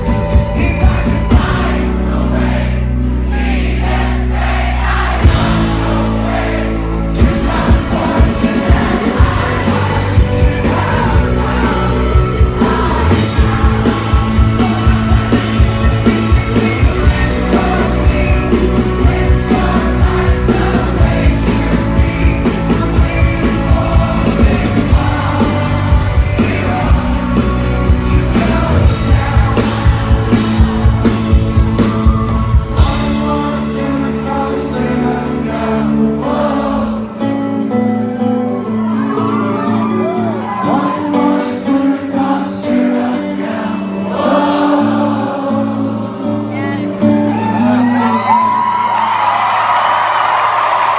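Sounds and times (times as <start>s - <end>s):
person singing lead vocal: 0.0s - 49.2s
live rock band: 0.0s - 50.9s
drum beat: 7.2s - 33.2s.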